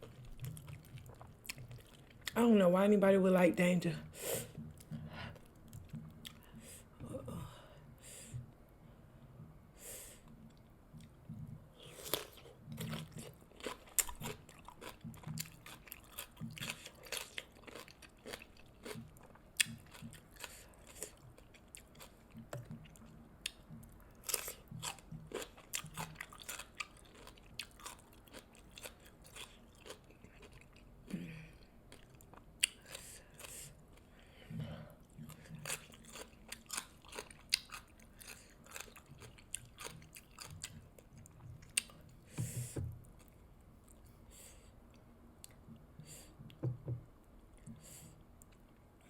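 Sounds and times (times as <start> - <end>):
crunchy chewing: 11.8 - 30.9, 35.1 - 42.0.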